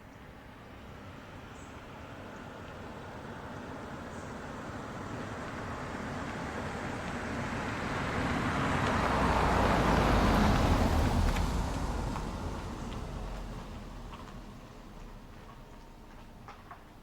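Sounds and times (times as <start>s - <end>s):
vehicle passing by: 2.9s - 15.6s.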